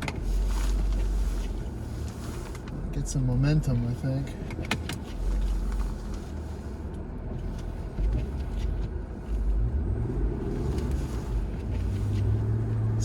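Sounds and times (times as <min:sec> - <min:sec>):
car engine revving: 0:07.2 - 0:13.0.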